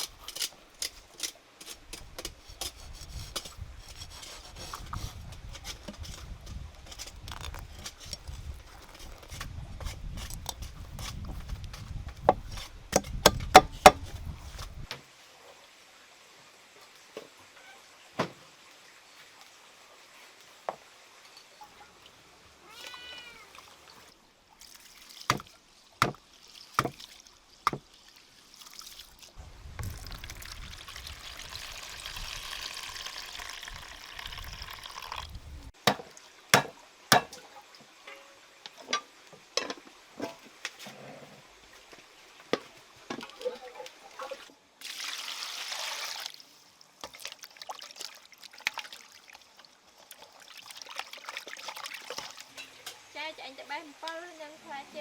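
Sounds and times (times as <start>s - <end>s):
water splashing and pouring: 23.0s - 36.4s, 42.6s - 53.0s.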